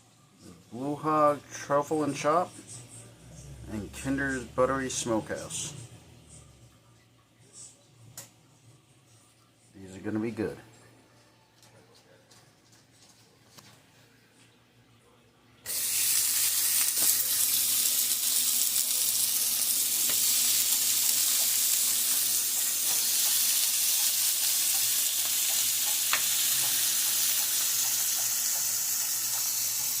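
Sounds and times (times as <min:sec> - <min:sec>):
burger patties sizzling: 0:15.7 - 0:30.0.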